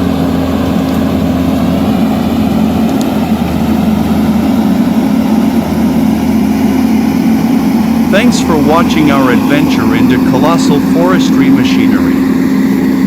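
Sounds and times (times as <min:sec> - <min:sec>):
heavy machine engine running: 0:00.0 - 0:13.0.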